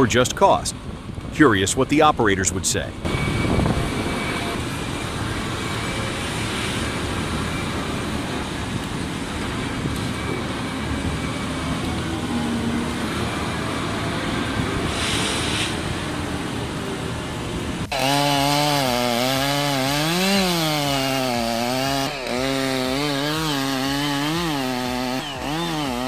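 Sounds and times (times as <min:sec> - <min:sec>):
heavy machinery engine rumbling: 0:03.0 - 0:26.0
brief hiss: 0:14.9 - 0:16.4.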